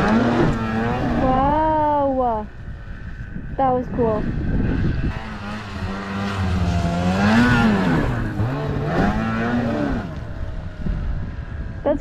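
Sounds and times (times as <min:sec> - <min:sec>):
snowmobile engine revving: 0:00.0 - 0:02.5, 0:03.6 - 0:12.0.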